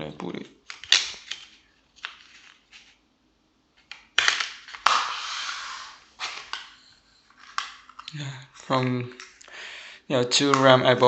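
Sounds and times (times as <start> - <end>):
rustling scrape: 4.9 - 7.9.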